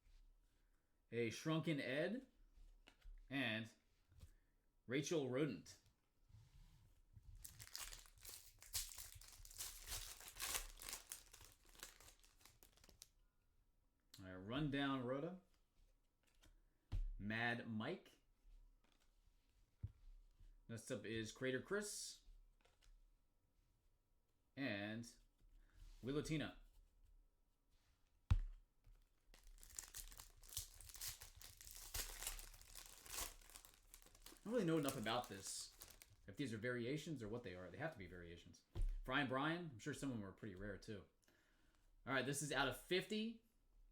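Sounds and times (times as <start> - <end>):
wrapper crinkling and tearing: 7.4 - 13.1, 29.4 - 36.2.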